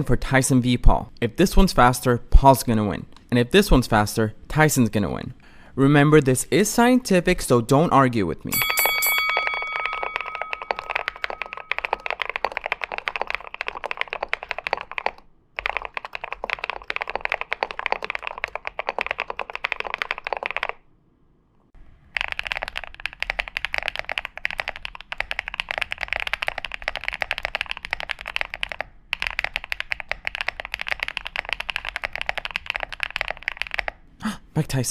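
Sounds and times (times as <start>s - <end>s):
bell ringing: 8.5s - 12.4s
fast typing on mechanical keyboard: 8.7s - 20.8s, 22.1s - 34.0s.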